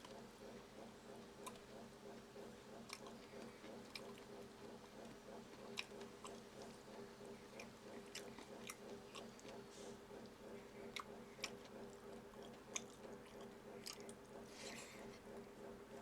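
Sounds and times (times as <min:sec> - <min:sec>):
close-miked chewing of food: 0:00.0 - 0:16.0
faint steady hum: 0:00.0 - 0:16.0
wet mouth clicks and smacks: 0:07.5 - 0:09.6, 0:10.9 - 0:14.2.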